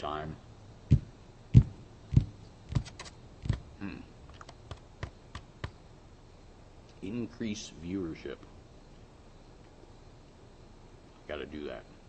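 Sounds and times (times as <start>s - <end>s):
irregular sharp clicks and taps: 0.9s - 3.7s, 4.3s - 5.8s.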